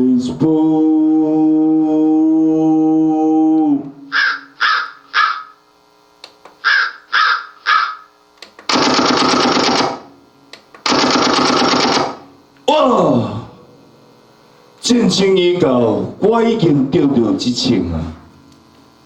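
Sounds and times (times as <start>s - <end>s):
crow cawing effect: 4.1s - 5.6s, 6.6s - 8.2s
harsh buzzing bursts: 4.1s - 5.7s, 6.6s - 12.5s.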